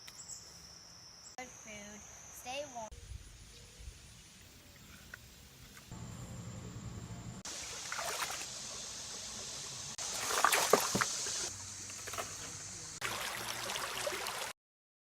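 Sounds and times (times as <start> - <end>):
water running and sloshing: 7.5 - 14.6.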